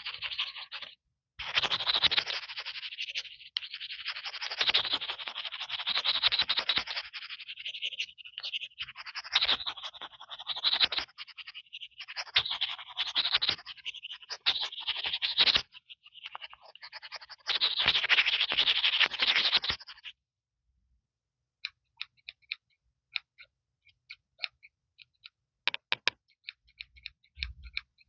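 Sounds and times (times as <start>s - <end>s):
fingertips scratching on microphone: 0.0s - 20.1s
small taps on microphone: 25.7s - 26.2s.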